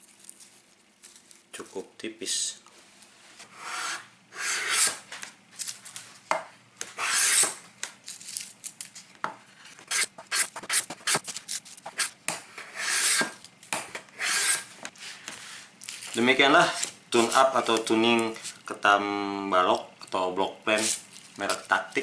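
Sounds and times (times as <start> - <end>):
block plane scraping wood: 3.4 - 5.0, 7.0 - 7.6, 11.9 - 13.4, 14.1 - 14.7.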